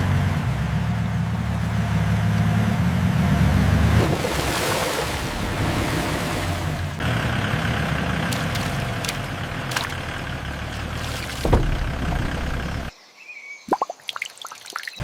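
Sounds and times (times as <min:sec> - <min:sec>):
water dripping: 0:13.7 - 0:15.0.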